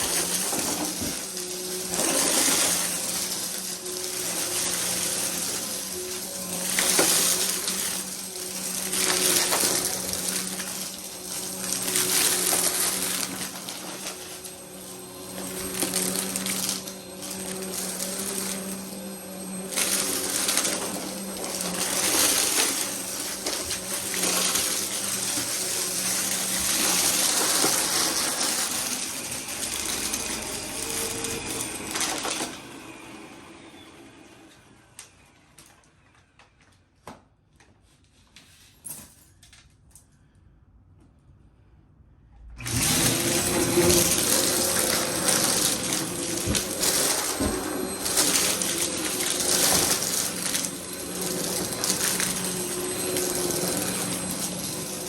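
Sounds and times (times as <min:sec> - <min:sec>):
vacuum cleaner running: 0:00.0 - 0:35.9, 0:42.4 - 0:55.0.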